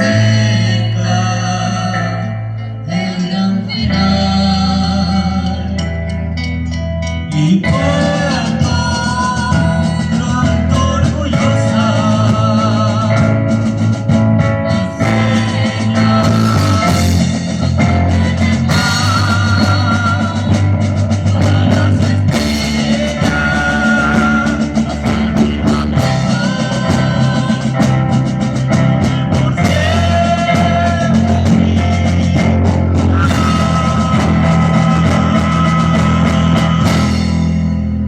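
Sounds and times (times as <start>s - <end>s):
rock music: 0.0s - 38.0s.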